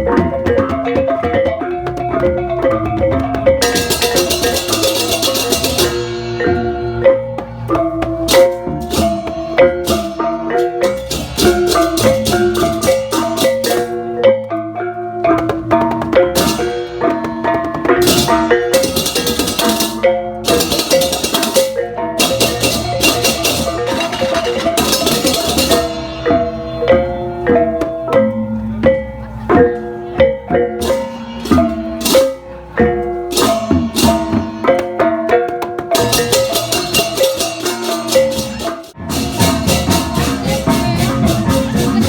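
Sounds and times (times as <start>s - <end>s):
drums: 0.0s - 42.0s
rapid cymbal clashing: 3.6s - 14.2s, 16.4s - 26.6s, 36.0s - 42.0s.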